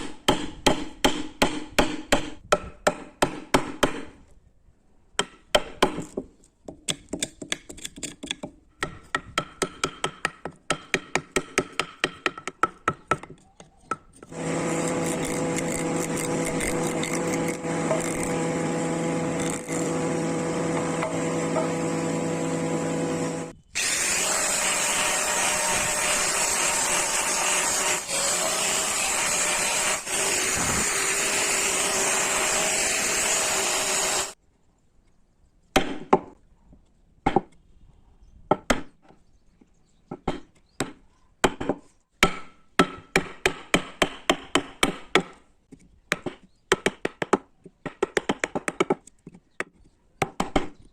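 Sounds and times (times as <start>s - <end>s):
sharp wooden taps and knocks: 5.2s - 14.3s, 42.8s - 50.9s
power tool grinding wood: 14.3s - 34.4s.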